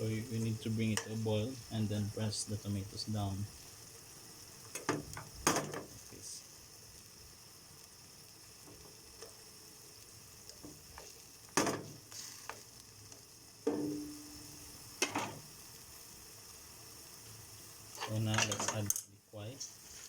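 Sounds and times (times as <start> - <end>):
tomatoes sizzling in a pan: 0.0 - 20.0.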